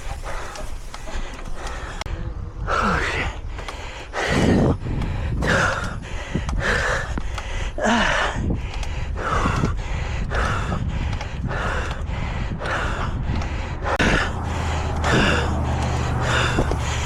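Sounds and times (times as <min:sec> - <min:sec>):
person breathing hard: 0:00.0 - 0:17.0
low rumble: 0:08.3 - 0:17.0.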